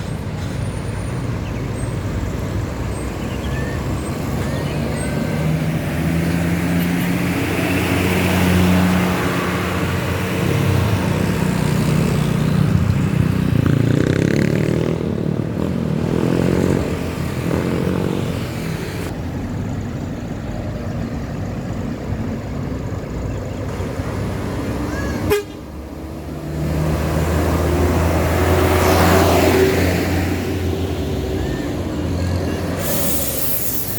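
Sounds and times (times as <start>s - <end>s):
bus diesel engine: 0.0s - 33.9s
traffic noise: 0.0s - 33.9s.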